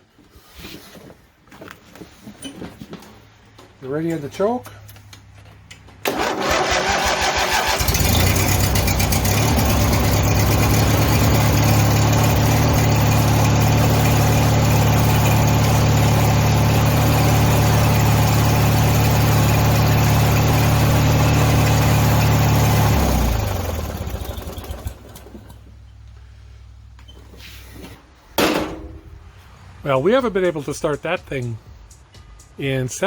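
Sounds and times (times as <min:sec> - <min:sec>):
riding lawn mower engine: 0:06.0 - 0:27.1.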